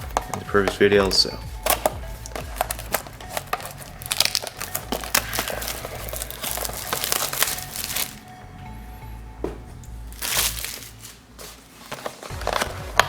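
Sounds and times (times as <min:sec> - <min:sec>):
plastic wrapping crinkling: 0:00.0 - 0:08.6, 0:09.4 - 0:13.0.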